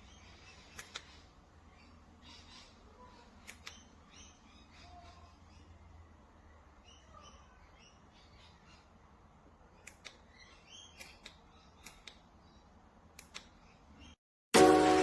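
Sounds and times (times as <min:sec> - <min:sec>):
faint bird chirps: 0:00.0 - 0:09.0
sharp light clicks: 0:00.6 - 0:01.2, 0:03.4 - 0:03.9, 0:09.8 - 0:12.3, 0:13.1 - 0:13.8.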